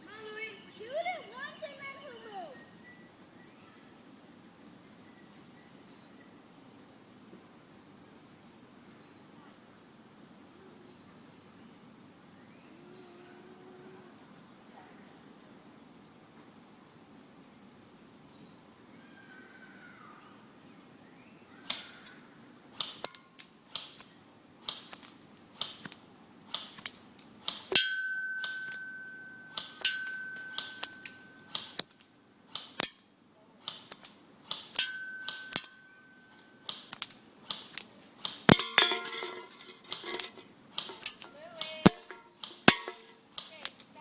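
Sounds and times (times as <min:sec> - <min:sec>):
metal target ringing: 0:27.7 - 0:31.3, 0:34.8 - 0:36.1, 0:38.5 - 0:43.1.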